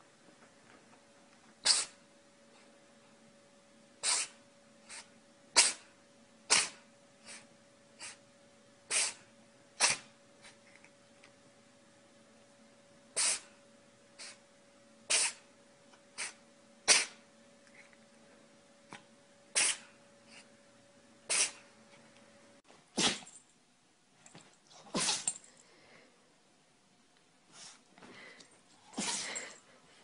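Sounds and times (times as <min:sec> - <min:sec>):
faint steady hum: 0:00.0 - 0:30.0
pet sneezing: 0:01.6 - 0:02.0, 0:04.0 - 0:05.9, 0:06.5 - 0:07.4, 0:08.0 - 0:08.2, 0:08.9 - 0:10.6, 0:13.2 - 0:13.6, 0:14.2 - 0:14.4, 0:15.1 - 0:15.5, 0:16.1 - 0:17.2, 0:19.5 - 0:20.4, 0:21.3 - 0:21.7, 0:22.9 - 0:23.4, 0:24.7 - 0:25.4, 0:28.8 - 0:29.6.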